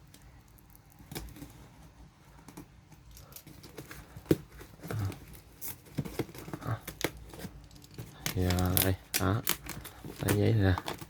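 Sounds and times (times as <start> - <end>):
packing paper rustling: 3.3 - 11.0.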